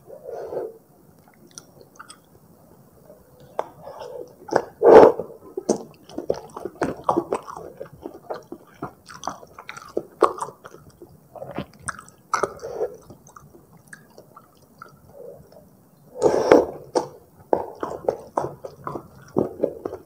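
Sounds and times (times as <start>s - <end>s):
wet chewing mouth clicks: 1.2s - 2.3s, 5.6s - 15.7s, 16.7s - 20.0s.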